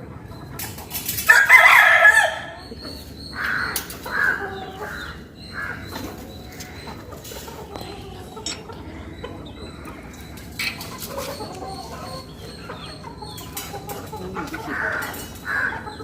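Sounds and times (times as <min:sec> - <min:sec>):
rooster crowing: 0:01.3 - 0:02.6.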